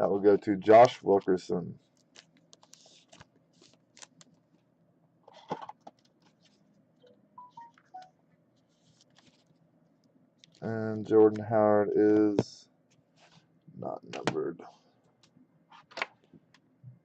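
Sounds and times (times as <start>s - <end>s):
cards rustling and clicking: 1.9s - 4.4s, 8.6s - 9.6s
soft tones: 7.0s - 8.2s.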